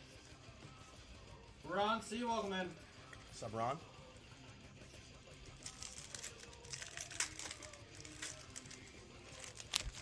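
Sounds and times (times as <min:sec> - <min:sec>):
faint crinkling of cards: 0:05.5 - 0:10.0.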